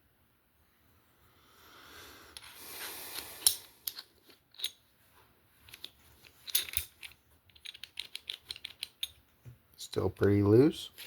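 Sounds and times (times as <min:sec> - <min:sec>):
sharp metal clicks: 0:05.7 - 0:09.2.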